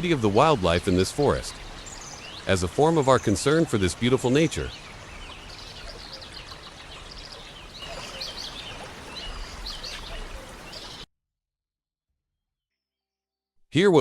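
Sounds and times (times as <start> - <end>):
rainforest ambience hiss: 0.0 - 11.0
birds chirping and trilling: 0.0 - 11.1.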